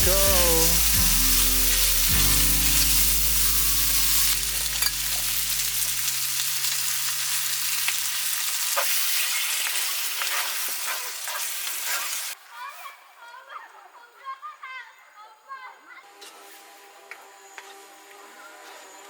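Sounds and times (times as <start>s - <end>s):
background music chord: 0.0s - 6.8s
food sizzling: 0.0s - 12.4s.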